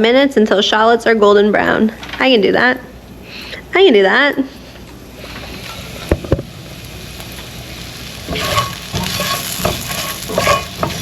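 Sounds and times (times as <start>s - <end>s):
shallots sizzling in oil: 5.2s - 11.0s
utensil scraping pan: 8.3s - 11.0s.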